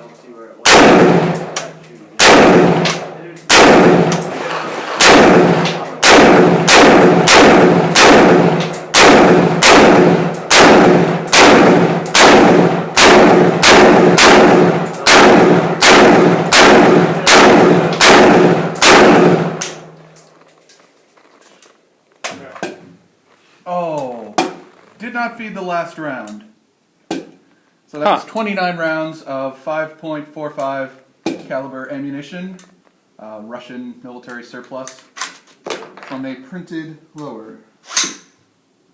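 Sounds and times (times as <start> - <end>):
rifle shots echoing: 0.6 - 20.2.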